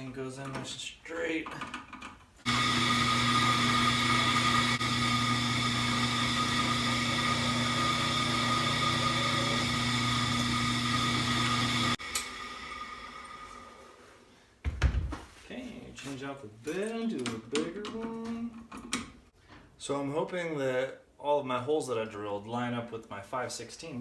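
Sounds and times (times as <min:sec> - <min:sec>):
drill press drilling metal: 0:02.5 - 0:12.4
drill press winding down: 0:02.5 - 0:13.8.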